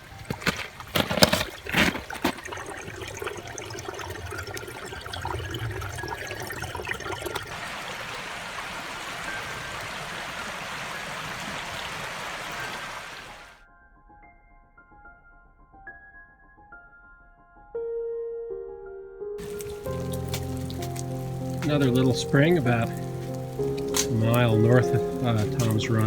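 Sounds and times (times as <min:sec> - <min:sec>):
spring water trickling: 0:00.0 - 0:13.6, 0:19.4 - 0:26.0.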